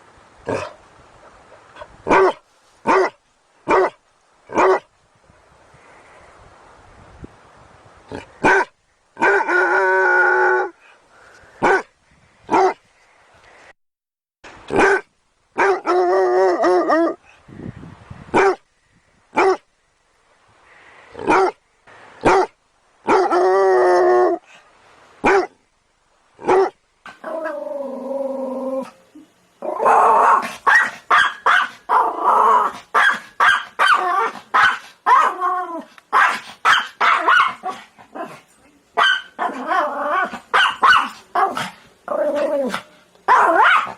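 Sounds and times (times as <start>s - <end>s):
dog barking: 2.1s - 4.0s, 8.4s - 9.5s, 11.6s - 11.9s, 12.5s - 12.8s, 14.7s - 15.9s, 18.4s - 18.6s, 19.4s - 19.6s, 21.2s - 21.6s, 22.2s - 23.3s, 25.2s - 25.6s, 30.3s - 35.4s, 36.1s - 37.8s, 39.0s - 39.6s, 40.3s - 41.8s, 42.7s - 43.9s.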